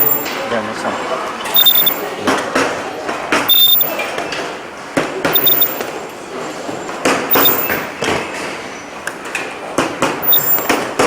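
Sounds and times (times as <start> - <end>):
short high beeps: 0.0 - 0.4, 1.5 - 2.1, 3.5 - 4.0, 5.4 - 5.9, 7.3 - 7.9, 10.2 - 10.8
knocks and clicks of parts: 7.3 - 8.2, 9.8 - 11.0.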